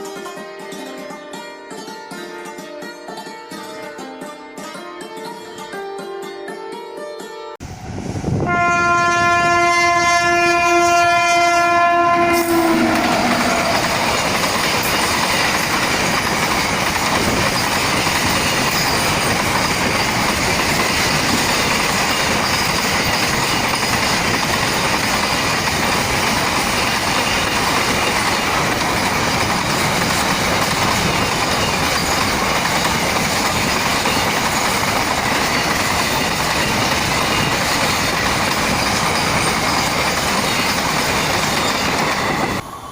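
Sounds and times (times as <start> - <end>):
goods train rushing past: 7.6 - 42.9
locomotive horn blast: 7.9 - 14.4
wagons rattling over rail joints: 12.5 - 42.6.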